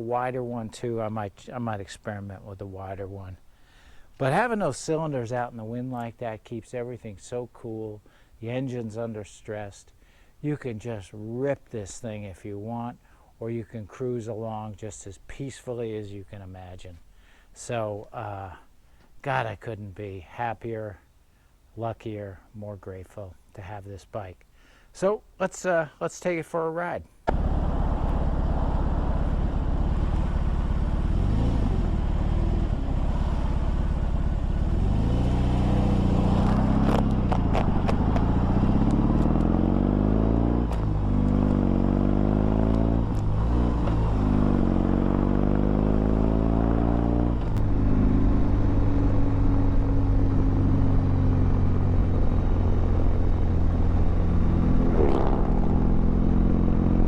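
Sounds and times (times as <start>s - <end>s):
motorcycle accelerating through gears: 27.3s - 57.0s.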